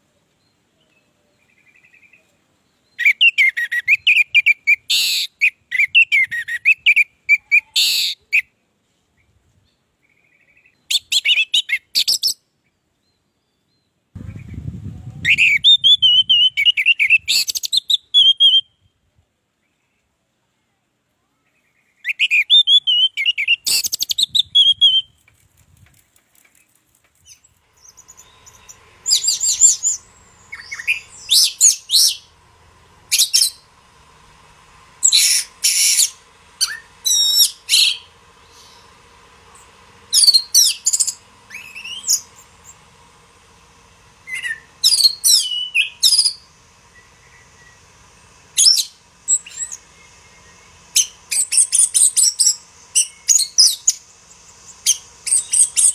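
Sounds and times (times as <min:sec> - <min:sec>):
faint steady hum: 0:00.0 - 0:55.9
thrush singing whistled phrases: 0:03.0 - 0:08.5, 0:15.2 - 0:18.8, 0:22.0 - 0:25.2, 0:27.8 - 0:42.9, 0:44.2 - 0:54.0, 0:54.6 - 0:55.9.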